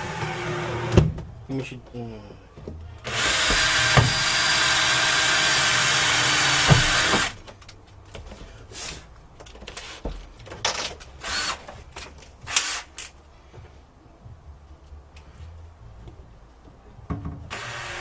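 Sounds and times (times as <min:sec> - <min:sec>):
power drill running: 0:03.1 - 0:07.3, 0:11.2 - 0:11.6, 0:17.5 - 0:18.0.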